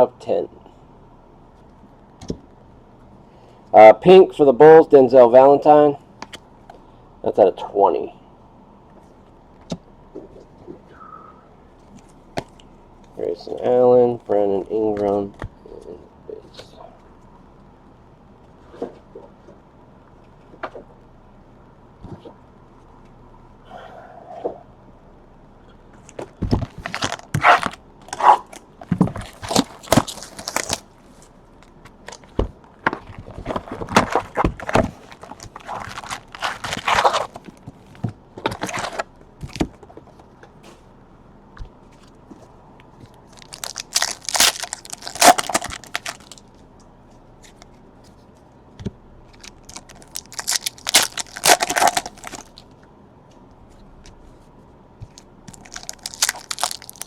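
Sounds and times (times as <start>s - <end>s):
plastic wrappers tearing and crumpling: 26.7s - 28.6s, 29.2s - 30.8s, 33.0s - 37.6s, 43.3s - 46.4s, 49.3s - 52.6s, 55.1s - 57.0s.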